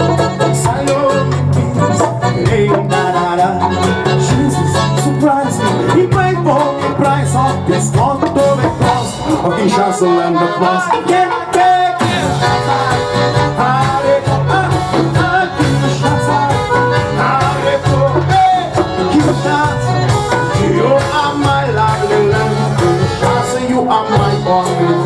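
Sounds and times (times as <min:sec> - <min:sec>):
live band music: 0:00.0 - 0:25.0
pulsing bass beat: 0:12.0 - 0:24.6.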